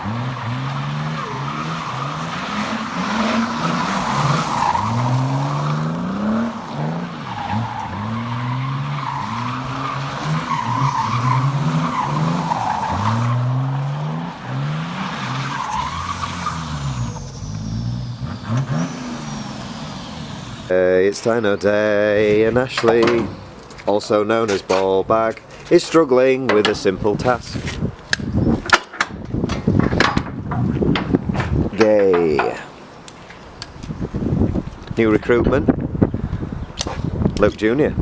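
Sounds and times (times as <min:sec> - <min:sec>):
car engine revving: 0:00.0 - 0:21.5
tires squealing: 0:00.0 - 0:28.7.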